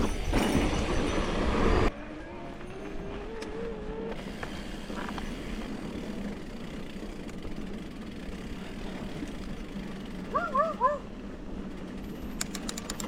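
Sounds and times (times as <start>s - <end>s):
bike tyres rolling on dirt: 3.8s - 12.3s.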